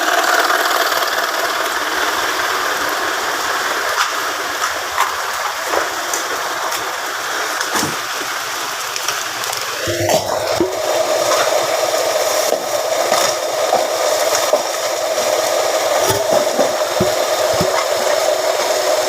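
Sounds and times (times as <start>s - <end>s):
press machine motor running: 15.7s - 18.4s.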